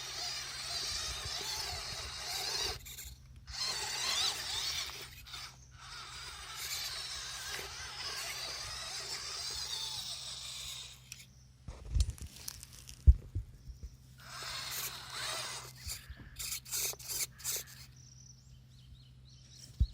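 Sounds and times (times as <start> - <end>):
electric motor and gears whirring: 0.0 - 18.4
clicks and scrapes: 14.3 - 17.9.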